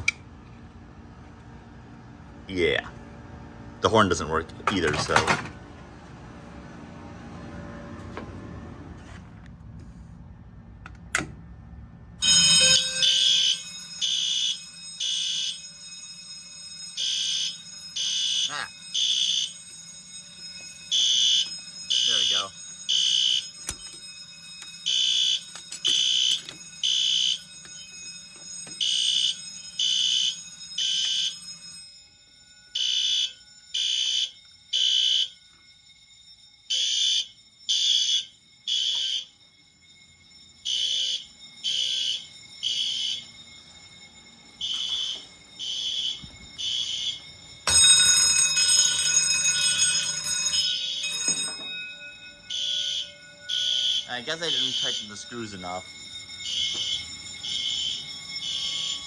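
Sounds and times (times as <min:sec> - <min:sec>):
fire alarm horn pulses: 0:12.2 - 0:59.0.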